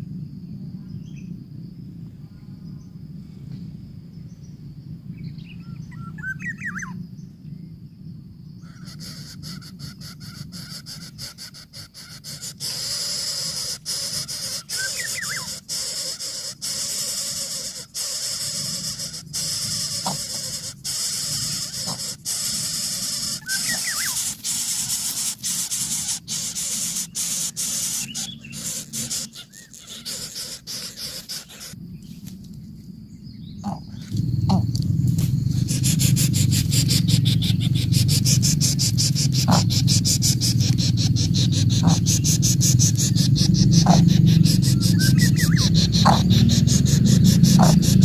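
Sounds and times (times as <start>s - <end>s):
steady low rumble: 0.0s - 11.2s, 31.5s - 48.0s
nestlings pulsing hiss: 8.6s - 48.0s.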